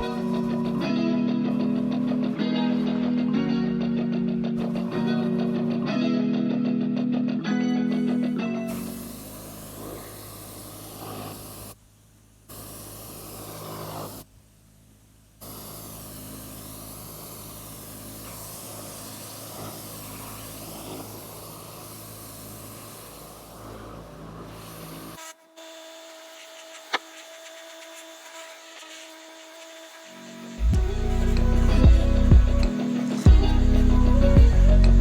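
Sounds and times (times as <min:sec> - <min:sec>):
pressure washer spraying water: 0:00.0 - 0:03.8, 0:07.9 - 0:11.8, 0:12.5 - 0:14.3, 0:15.4 - 0:35.0
machine humming: 0:29.4 - 0:35.0.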